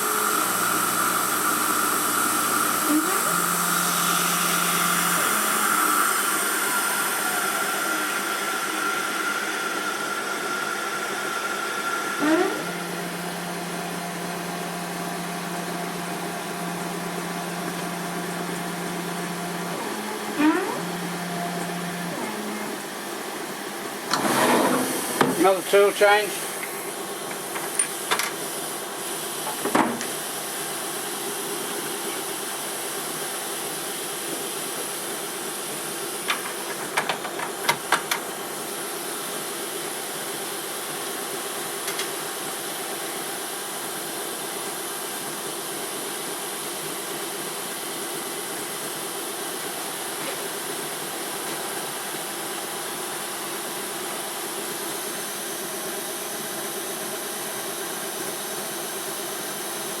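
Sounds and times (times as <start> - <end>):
milling machine hissing: 0.0 - 27.8.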